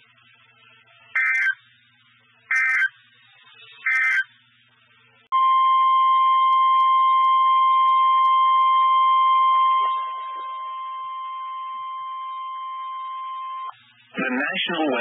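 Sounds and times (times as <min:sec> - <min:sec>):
single-pitch warning alarm tone: 0:01.2 - 0:01.6, 0:02.5 - 0:02.9, 0:03.8 - 0:04.3, 0:05.3 - 0:13.7.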